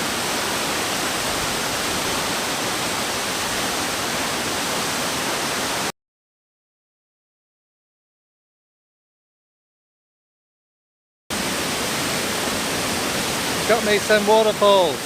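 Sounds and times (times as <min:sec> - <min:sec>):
waterfall rushing: 0:00.0 - 0:05.9, 0:11.3 - 0:15.0.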